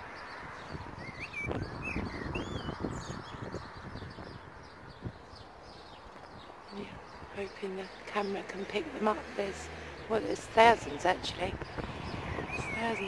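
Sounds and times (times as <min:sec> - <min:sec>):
small birds twittering: 0:00.0 - 0:13.0
footsteps on garden path: 0:05.9 - 0:08.7.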